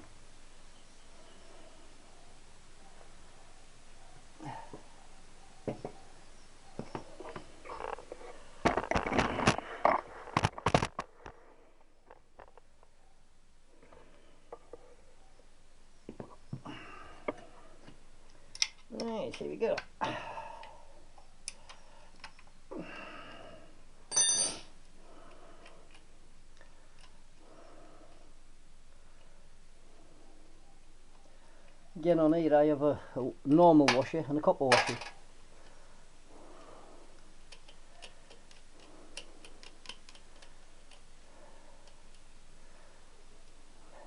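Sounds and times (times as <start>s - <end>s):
loud metallic clink ringing: 24.1s - 24.7s.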